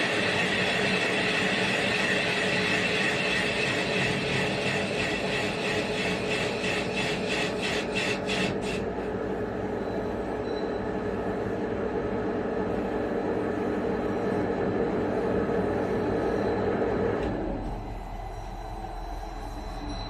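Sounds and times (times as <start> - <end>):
machine humming: 0.0 - 20.0.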